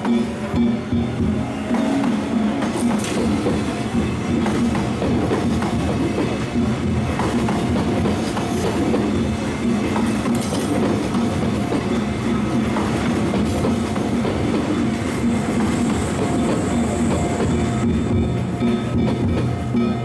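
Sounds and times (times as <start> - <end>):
train wheels rumbling on rails: 0.0 - 20.0.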